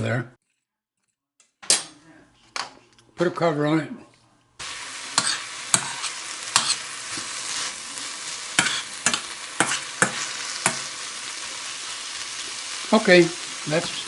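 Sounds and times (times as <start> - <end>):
food sizzling in a frying pan: 4.6 - 14.0.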